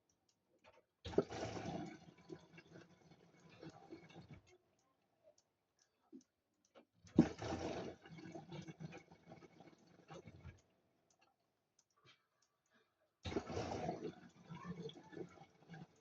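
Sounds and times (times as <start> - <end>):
faint clicks: 0.0 - 16.0
washing machine water and laundry sloshing: 0.6 - 4.8, 6.8 - 10.7, 13.2 - 16.0.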